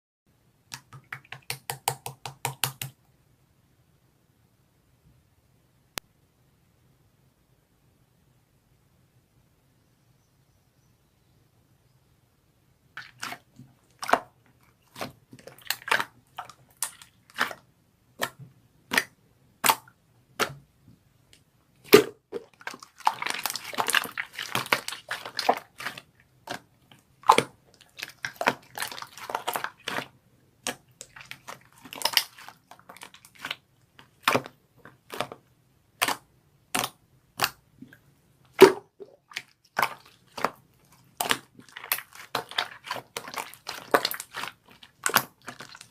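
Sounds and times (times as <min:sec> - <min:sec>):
sharp clicks and taps: 0:00.7 - 0:03.0.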